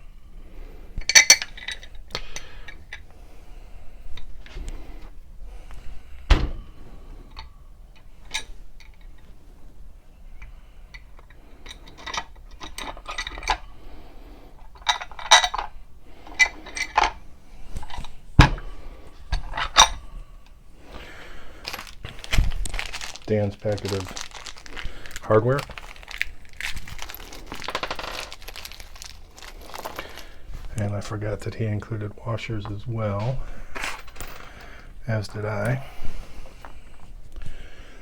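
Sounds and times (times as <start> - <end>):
metal parts clinking: 1.0 - 3.1, 10.9 - 13.7, 14.6 - 17.2, 17.8 - 20.5, 21.6 - 30.5, 33.8 - 34.6.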